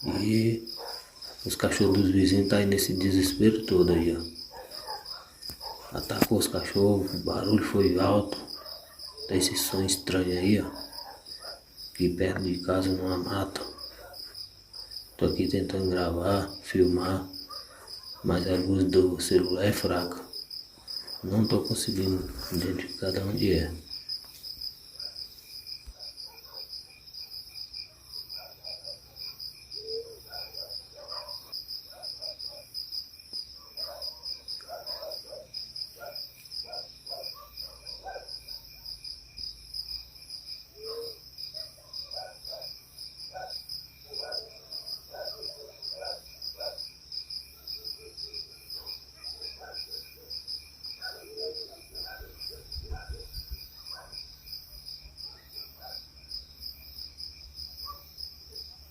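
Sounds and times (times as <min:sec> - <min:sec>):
crickets chirring: 0:00.0 - 0:58.9.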